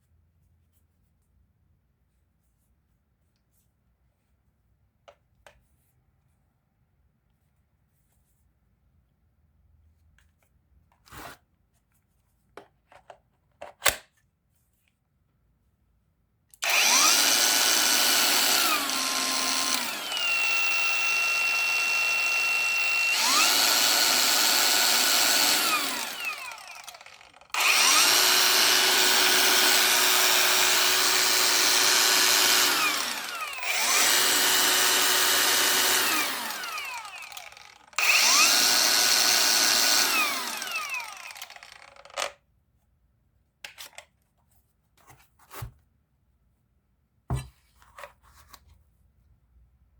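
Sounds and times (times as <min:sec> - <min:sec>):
tool handling clicks: 0:12.9 - 0:14.1, 0:39.9 - 0:42.4
power tool motor whine: 0:16.6 - 0:42.2.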